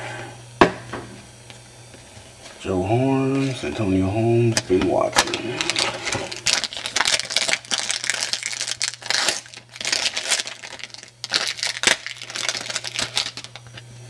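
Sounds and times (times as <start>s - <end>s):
steady low hum: 0.0s - 14.0s
foil wrappers crinkling: 5.0s - 13.9s.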